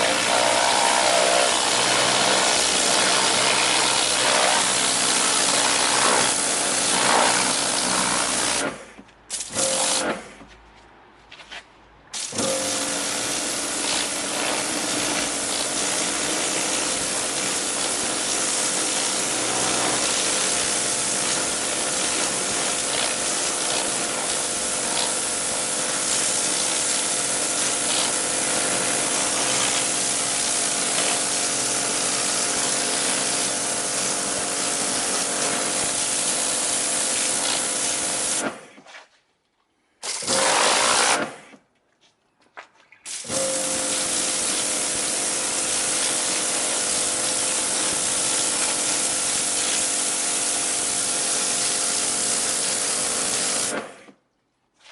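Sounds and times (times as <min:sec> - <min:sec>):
pressure washer motor hum: 0:00.0 - 0:08.7, 0:12.2 - 0:38.4, 0:43.2 - 0:53.8
water jet spraying: 0:43.1 - 0:53.7.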